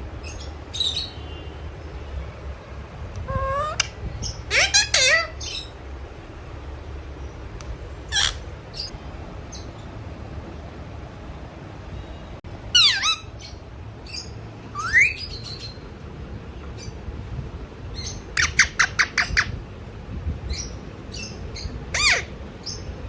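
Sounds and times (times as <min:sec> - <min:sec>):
parrot squawking and chirping: 0:03.2 - 0:05.8, 0:08.0 - 0:08.9, 0:12.7 - 0:15.8, 0:18.0 - 0:19.6, 0:20.5 - 0:22.9.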